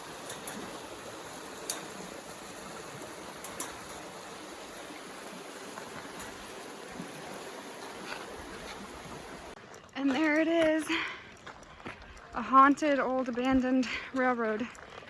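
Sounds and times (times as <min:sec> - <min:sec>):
stream rushing: 0:00.0 - 0:09.6
faint clicks: 0:01.4 - 0:07.3.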